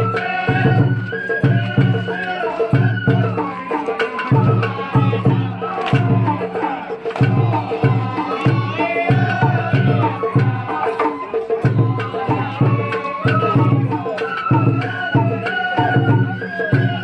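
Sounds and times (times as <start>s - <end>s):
high wavering bamboo flute: 0.0s - 17.0s
taiko drums beating: 0.0s - 17.0s.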